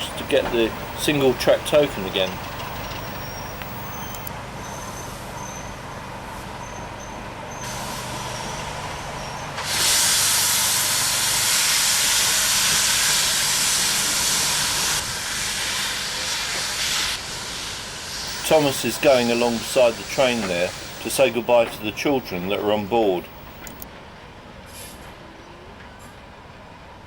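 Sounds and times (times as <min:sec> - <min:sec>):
train hiss of escaping pressure: 0:00.0 - 0:04.3, 0:09.6 - 0:23.8.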